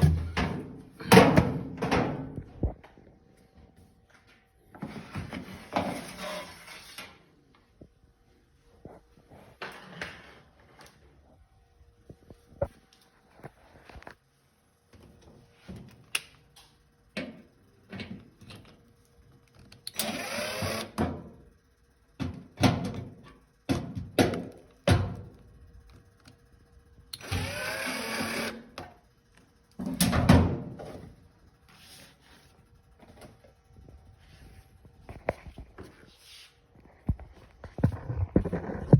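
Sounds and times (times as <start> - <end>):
knocks and clicks of parts: 22.2 - 25.4.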